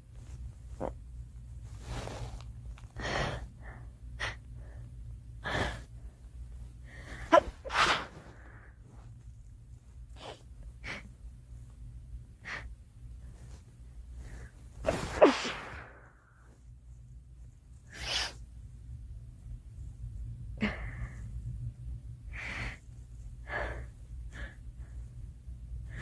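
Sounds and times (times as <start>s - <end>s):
girl sneezing: 14.9s - 16.0s.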